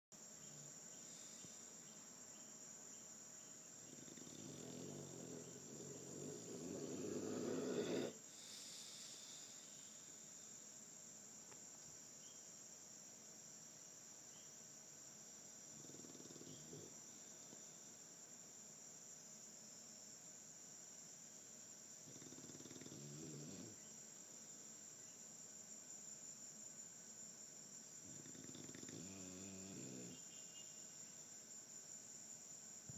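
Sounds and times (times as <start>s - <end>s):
soft snoring: 3.8s - 9.8s, 15.7s - 17.6s, 22.0s - 23.8s, 28.0s - 30.3s.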